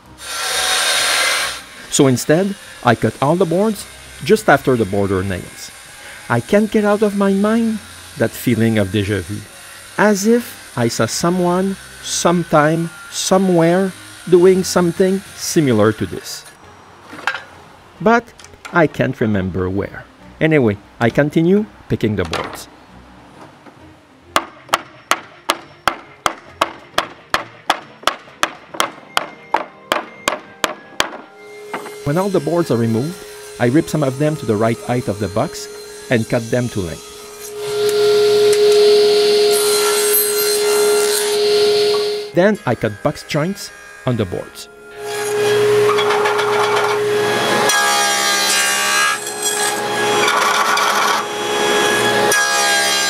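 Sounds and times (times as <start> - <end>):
power tool cutting wood: 0.0 - 16.6, 31.4 - 53.0
hammer striking wood: 24.3 - 32.0.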